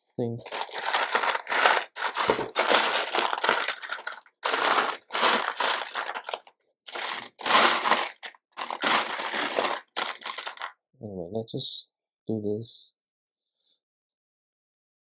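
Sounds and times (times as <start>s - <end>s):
plastic toy bricks rustling: 0.4s - 10.7s.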